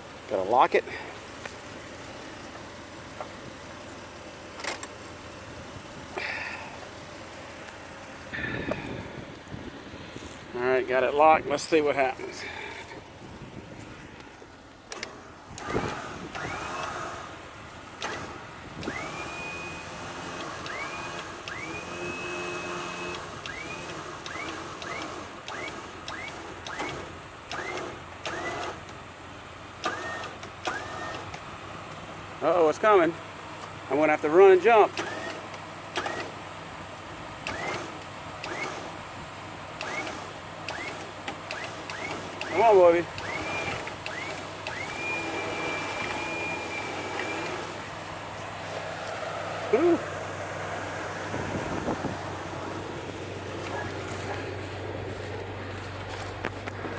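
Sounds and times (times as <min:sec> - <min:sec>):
engine idling: 0:00.0 - 0:56.9
electric winch clicking and whining: 0:04.4 - 0:05.3, 0:14.1 - 0:56.9
sharp clicks: 0:14.9 - 0:17.1, 0:37.4 - 0:38.9, 0:39.8 - 0:47.9.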